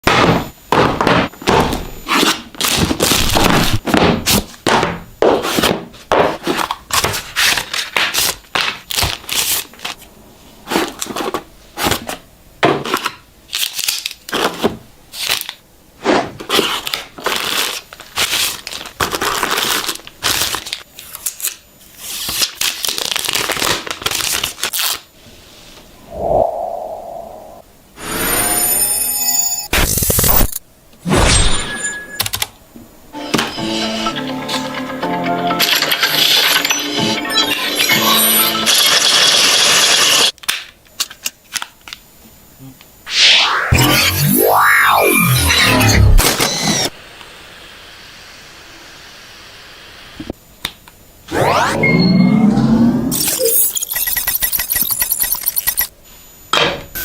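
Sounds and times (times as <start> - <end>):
plastic wrap crinkling and tearing: 16.5 - 25.1
brief hum: 43.1 - 46.3.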